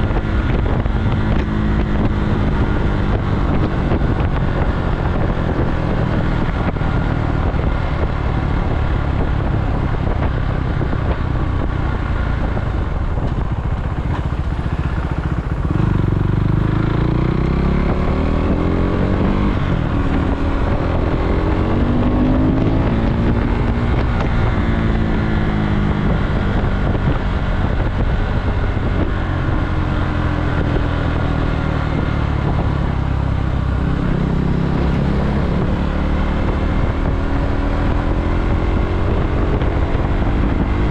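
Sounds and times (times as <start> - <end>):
motorcycle engine running: 0.0 - 40.9
wind noise on microphone: 0.0 - 40.9.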